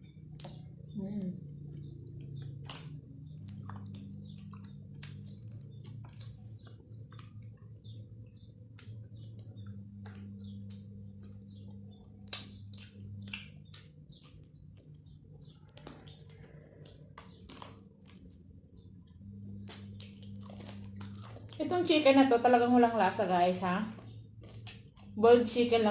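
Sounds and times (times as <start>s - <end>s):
steady low hum: 0.0s - 25.9s
wet chewing and mouth clicks: 0.1s - 21.8s, 23.8s - 25.2s.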